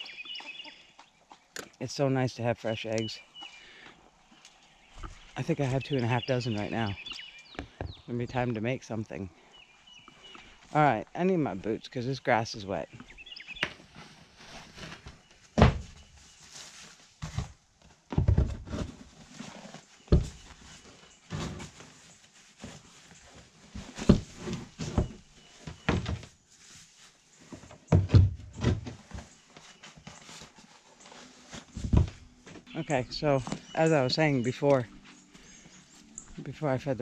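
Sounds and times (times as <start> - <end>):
irregular thumps and knocks: 4.9 - 8.4, 15.6 - 16.0, 17.2 - 19.0, 20.1 - 20.6, 27.5 - 30.2, 31.5 - 34.9.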